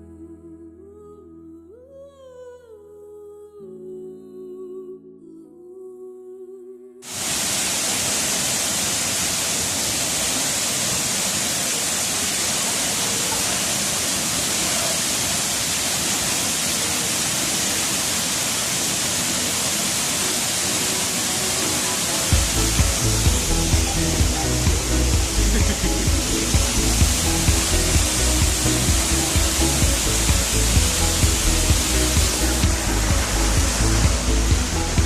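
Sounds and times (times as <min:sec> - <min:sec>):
soft humming music: 0:00.0 - 0:07.1, 0:16.3 - 0:35.0
waterfall rushing: 0:07.0 - 0:35.0
low music beats: 0:22.3 - 0:35.0.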